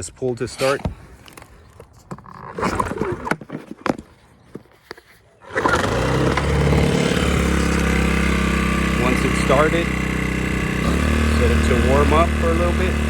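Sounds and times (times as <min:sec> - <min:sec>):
generator engine running: 0:05.4 - 0:13.0
recoil starter rattling: 0:05.4 - 0:13.0.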